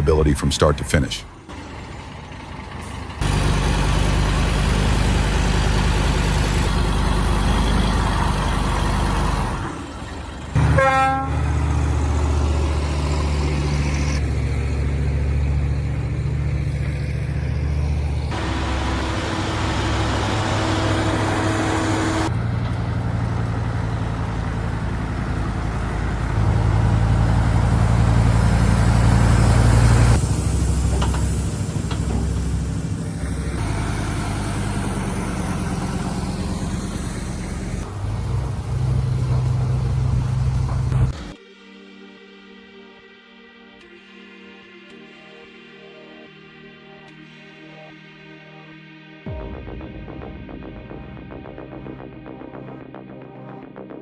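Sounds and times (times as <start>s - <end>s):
heavy diesel machinery engines: 0.0s - 41.4s.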